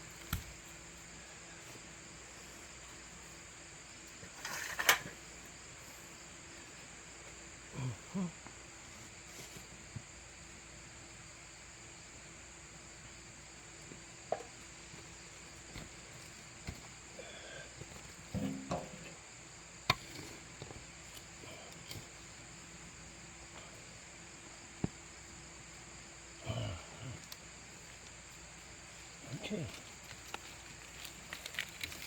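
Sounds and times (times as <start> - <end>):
insects chirring: 0.0 - 32.0
potatoes dug from soil: 30.1 - 32.0.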